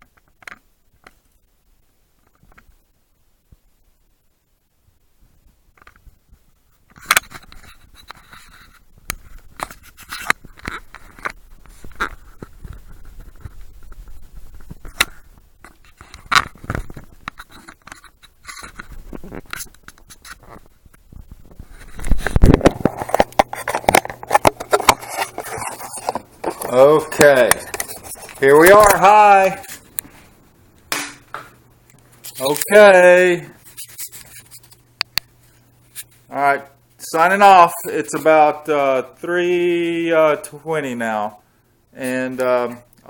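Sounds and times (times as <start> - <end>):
low steady hum: 1.5 - 43.0
rubbing and rustling: 5.3 - 30.4, 31.6 - 38.4
camera handling clicks and scrapes: 6.9 - 12.5, 21.8 - 29.0, 33.6 - 34.8.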